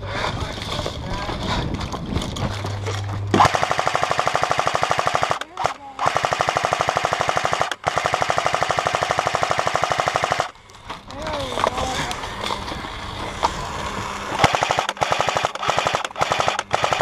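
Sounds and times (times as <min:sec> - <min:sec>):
airsoft gun firing rapid bursts: 0:03.4 - 0:10.5, 0:14.4 - 0:17.0.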